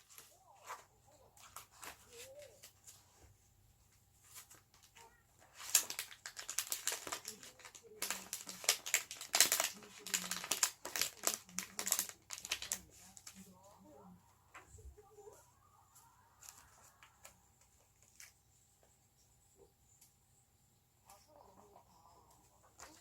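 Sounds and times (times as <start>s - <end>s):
packaging crinkling and rustling: 4.2s - 13.6s.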